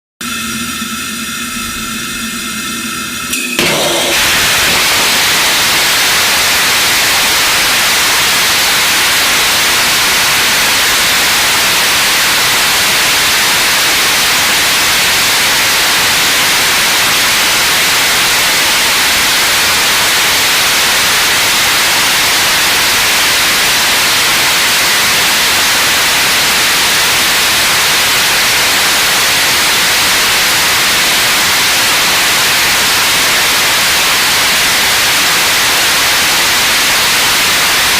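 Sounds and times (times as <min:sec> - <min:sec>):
rocket engine roaring: 0:00.2 - 0:10.8.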